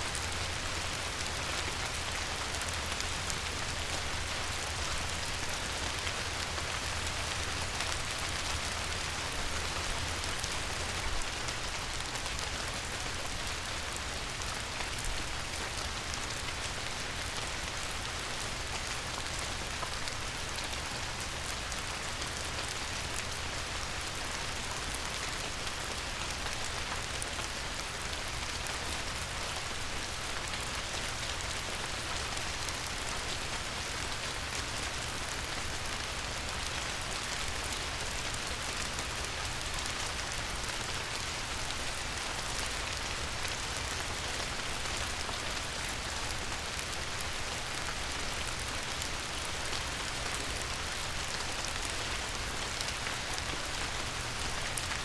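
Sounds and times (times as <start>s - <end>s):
light rain on river: 0.0s - 55.0s.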